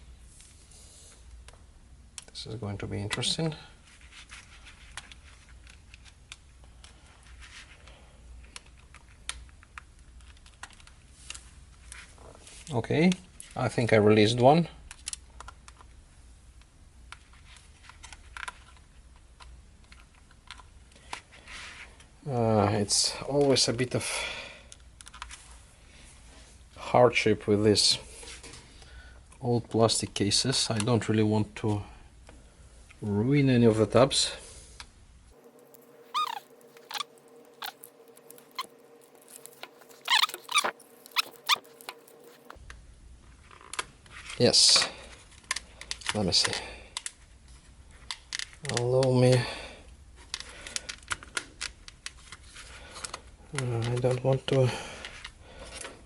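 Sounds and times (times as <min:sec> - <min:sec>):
plastic case creaking and squeaking: 0:35.4 - 0:42.6.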